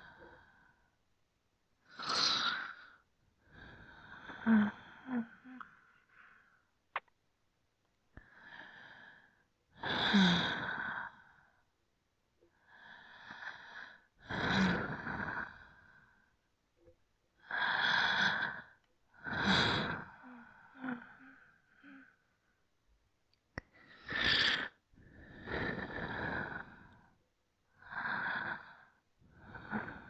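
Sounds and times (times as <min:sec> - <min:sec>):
soft breathy sounds: 0:00.0 - 0:01.0, 0:01.8 - 0:07.1, 0:08.1 - 0:11.8, 0:12.4 - 0:22.7, 0:23.5 - 0:30.0
person breathing deeply: 0:27.8 - 0:30.0.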